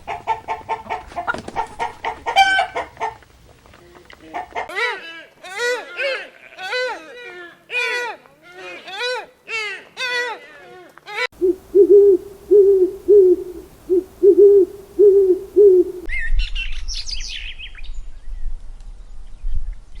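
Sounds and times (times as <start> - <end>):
bird low hooting: 11.3 - 16.1.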